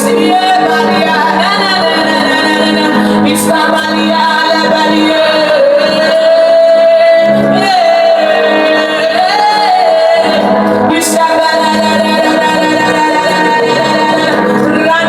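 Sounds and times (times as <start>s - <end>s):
sustained accompanying chords: 0.0s - 15.0s.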